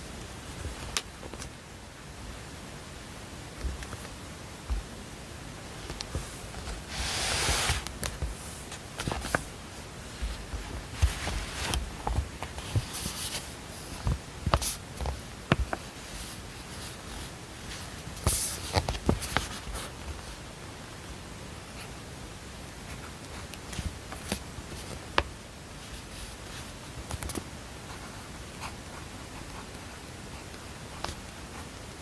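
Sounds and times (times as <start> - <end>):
steady white-noise hiss: 0.0 - 32.0
paper rustling: 6.2 - 9.5.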